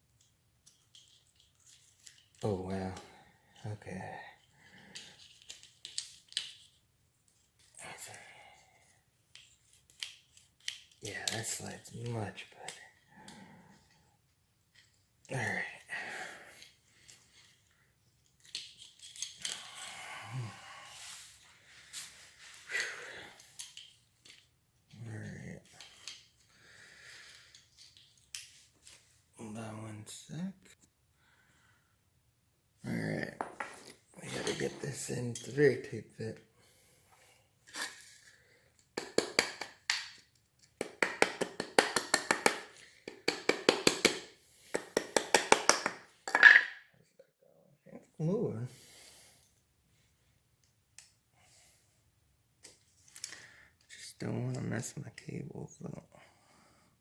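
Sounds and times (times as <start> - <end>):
scraping of small parts: 0.2 - 2.5, 4.9 - 7.8, 16.6 - 19.8, 23.4 - 24.5
small parts clicking: 23.6 - 24.5
sharp metallic taps and clicks: 40.8 - 46.0.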